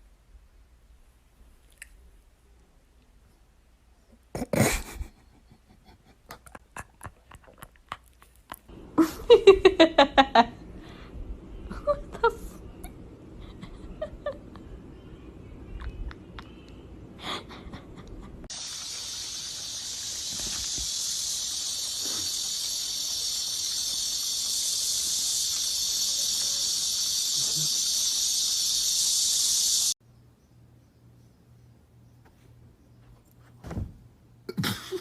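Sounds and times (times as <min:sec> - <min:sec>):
high-pitched hiss: 0:18.4 - 0:30.0.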